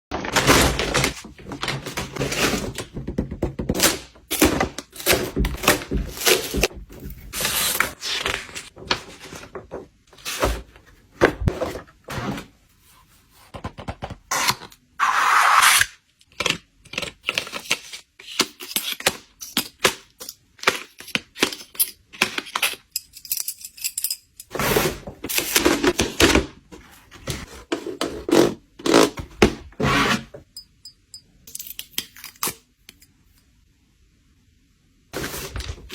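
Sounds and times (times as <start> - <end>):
boxes thunking and knocking: 0.2 - 7.4.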